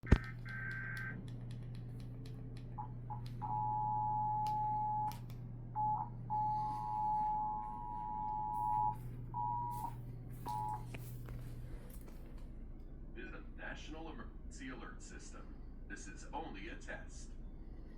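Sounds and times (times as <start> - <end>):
steady low hum: 0.0 - 17.9
two-tone alert signal: 5.8 - 9.9, 10.5 - 10.8.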